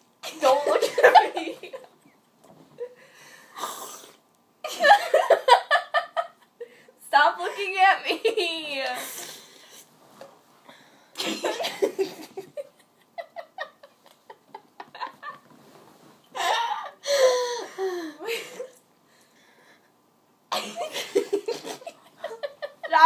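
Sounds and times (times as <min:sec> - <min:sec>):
girls giggling and laughing: 0:00.2 - 0:03.0, 0:04.6 - 0:06.6, 0:11.2 - 0:15.6, 0:16.3 - 0:18.8, 0:20.5 - 0:23.0.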